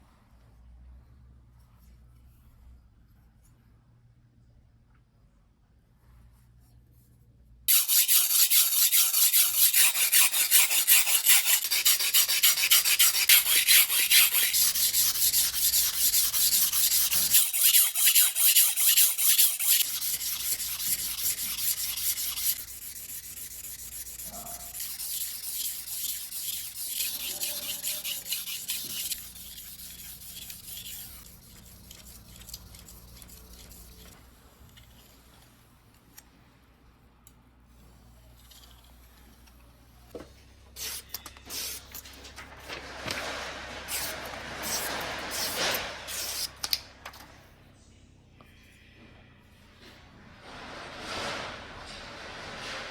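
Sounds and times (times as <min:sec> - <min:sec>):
knife scraping on whetstone: 0:07.7 - 0:34.1, 0:43.9 - 0:46.6.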